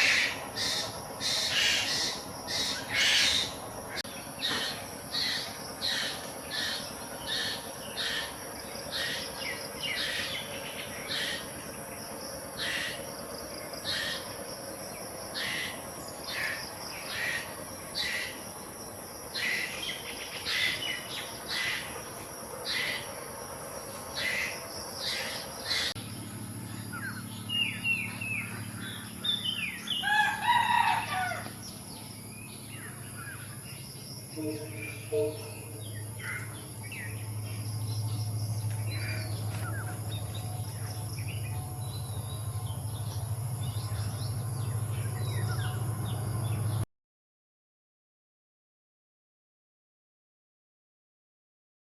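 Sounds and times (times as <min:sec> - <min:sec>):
birds chirping: 0:00.0 - 0:46.8
pitch-sliding bird call: 0:34.3 - 0:36.0.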